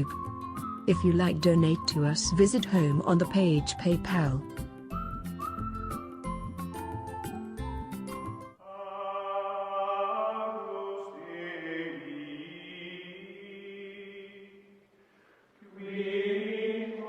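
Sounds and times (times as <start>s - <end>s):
chant-like voices singing: 8.6s - 14.8s, 15.6s - 17.0s.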